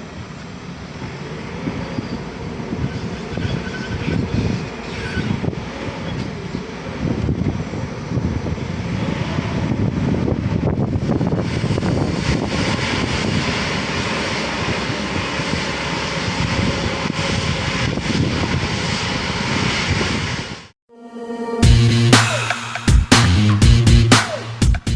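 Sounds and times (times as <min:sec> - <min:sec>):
drilling rig machinery drone: 0:00.0 - 0:20.4, 0:21.0 - 0:24.9.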